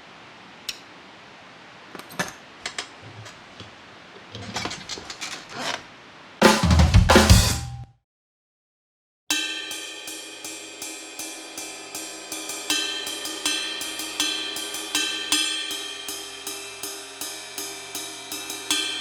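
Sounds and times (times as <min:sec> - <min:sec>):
steady hiss: 0:00.0 - 0:07.5, 0:09.4 - 0:19.0
drum kit playing: 0:06.4 - 0:07.9
bass drum: 0:06.5 - 0:07.9.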